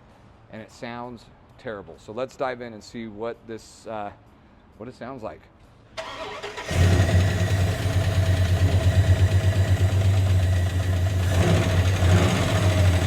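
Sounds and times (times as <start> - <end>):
engine ticking noise: 6.0 - 13.0
truck engine starting and idling: 6.0 - 13.0.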